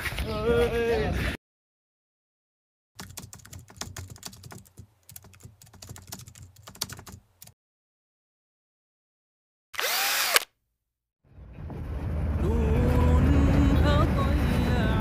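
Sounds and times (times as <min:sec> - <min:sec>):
rapid clicks and taps: 0:03.0 - 0:07.6.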